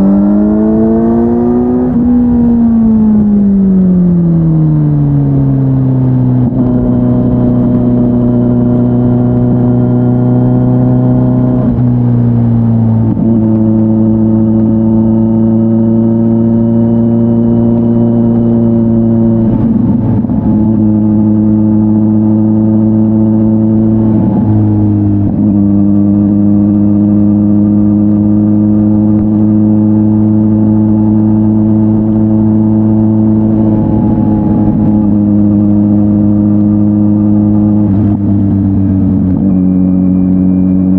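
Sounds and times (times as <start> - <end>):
motorcycle engine at steady revs: 0.0 - 40.9.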